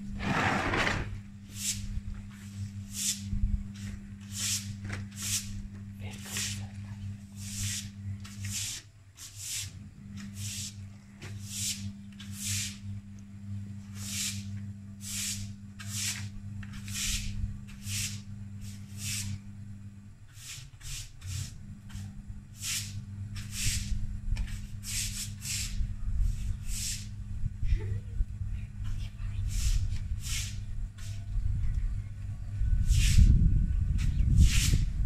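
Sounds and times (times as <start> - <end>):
washing machine humming: 0.0 - 35.0.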